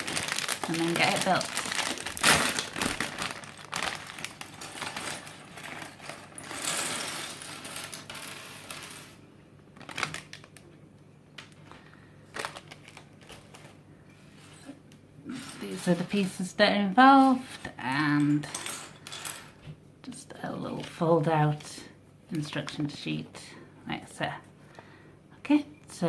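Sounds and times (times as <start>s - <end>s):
plastic bag rustling: 0.0s - 9.2s, 9.8s - 10.6s, 11.5s - 17.6s
lego pieces clattering: 3.8s - 9.2s.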